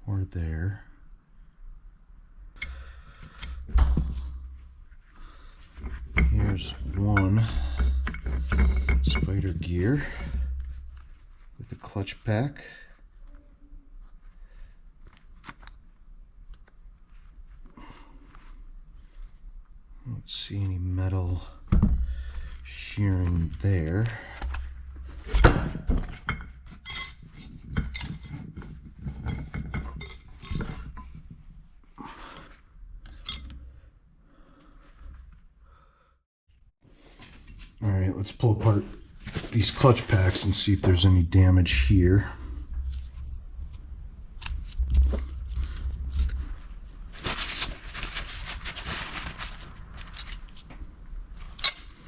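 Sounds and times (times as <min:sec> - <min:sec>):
metal plates sliding and scraping: 0:05.8 - 0:10.8.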